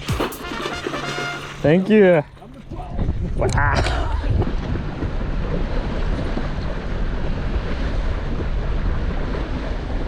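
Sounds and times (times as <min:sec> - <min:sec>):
waves washing against boat: 0:00.0 - 0:10.0
wind buffeting microphone: 0:01.8 - 0:10.0
deep rumble: 0:02.6 - 0:10.0.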